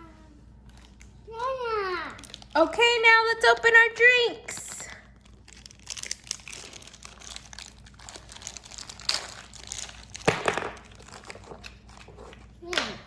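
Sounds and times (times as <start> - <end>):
plastic packaging crinkling: 2.2 - 2.7, 4.8 - 12.6.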